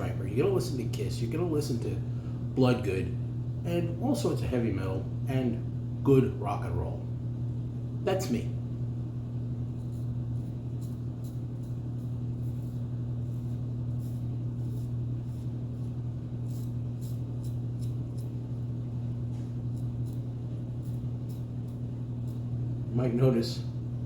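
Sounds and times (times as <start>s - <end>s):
steady low hum: 0.0s - 24.0s
razor cutting stubble: 9.6s - 23.3s.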